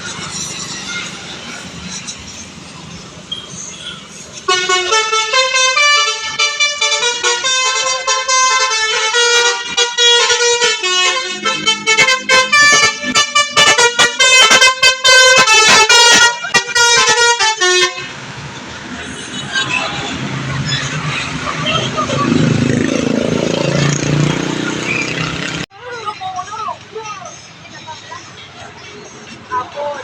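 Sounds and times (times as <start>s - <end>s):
musical air horn playing a tune: 4.5s - 18.1s.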